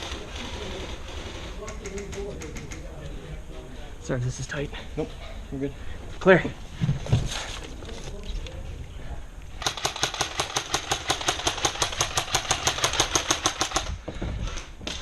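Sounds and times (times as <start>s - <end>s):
airsoft gun full-auto burst: 9.6s - 13.9s.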